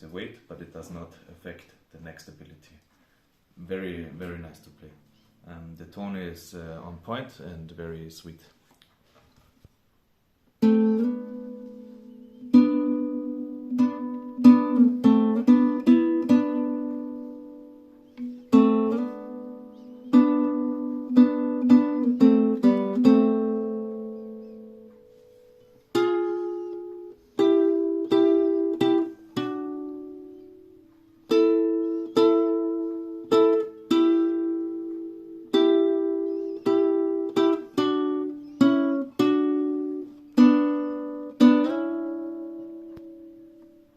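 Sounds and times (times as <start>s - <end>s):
plucked nylon-string guitar: 10.6s - 43.9s.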